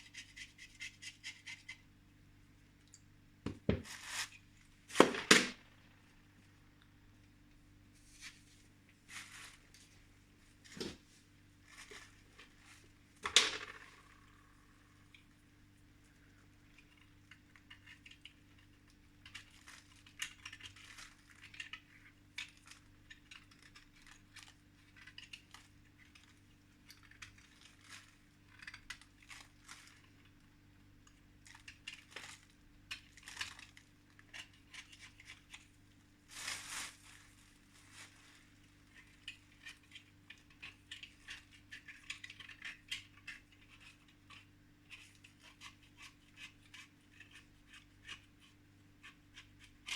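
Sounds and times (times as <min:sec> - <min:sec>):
low electrical hum: 0:00.0 - 0:49.9
scrape: 0:03.8 - 0:05.0, 0:07.9 - 0:09.9, 0:36.3 - 0:39.8
small objects scratching and clicking: 0:16.7 - 0:30.3, 0:31.4 - 0:49.9.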